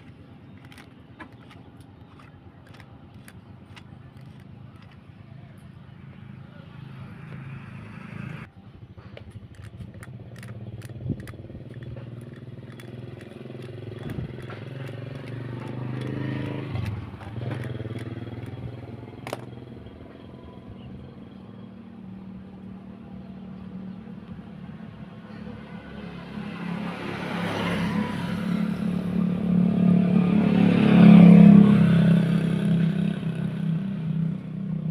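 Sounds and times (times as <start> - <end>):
sharp clicks and taps: 0.0 - 5.0, 9.1 - 18.6, 19.2 - 19.6
motorcycle engine running: 0.0 - 24.0.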